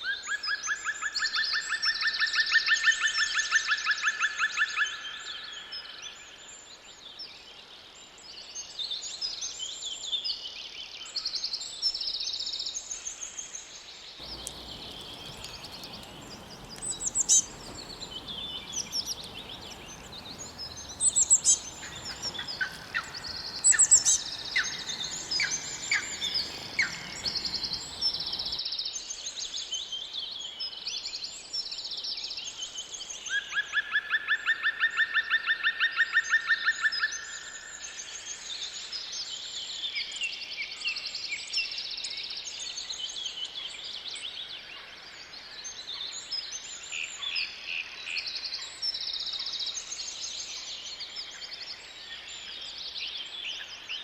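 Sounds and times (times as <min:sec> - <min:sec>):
background hiss: 0:14.2 - 0:28.6
songbirds singing: 0:14.2 - 0:28.6.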